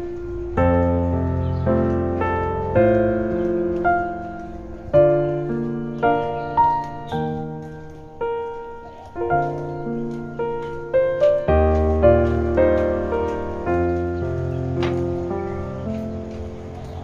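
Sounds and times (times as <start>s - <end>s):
slow piano music: 0.0s - 17.0s.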